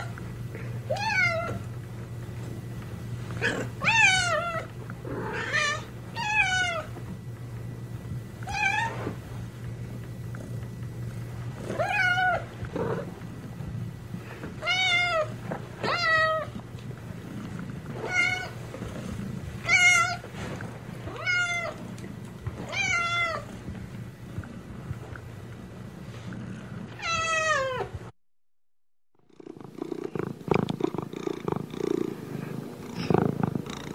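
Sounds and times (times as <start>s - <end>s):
cat purring: 9.4s - 14.5s, 15.2s - 27.0s, 29.3s - 33.9s.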